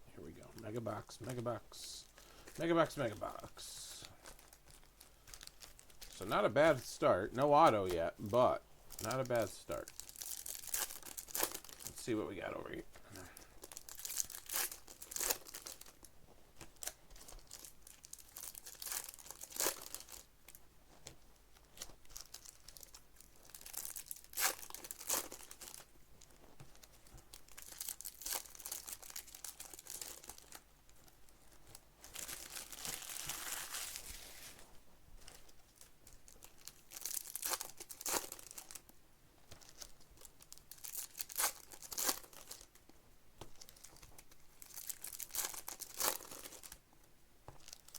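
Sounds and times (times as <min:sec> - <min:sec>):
card pack wrappers tearing: 0:02.3 - 0:12.2, 0:13.6 - 0:16.0, 0:16.8 - 0:20.3, 0:21.7 - 0:25.9, 0:27.4 - 0:30.6, 0:31.7 - 0:34.6, 0:35.8 - 0:38.8, 0:39.6 - 0:42.8, 0:43.6 - 0:46.8.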